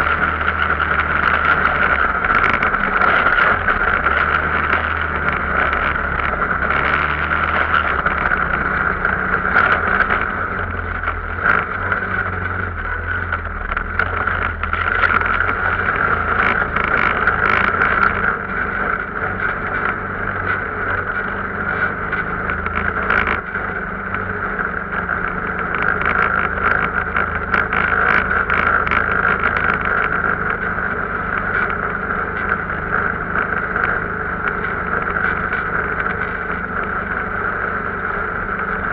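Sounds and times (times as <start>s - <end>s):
off-road vehicle engine running: 0.0s - 38.9s.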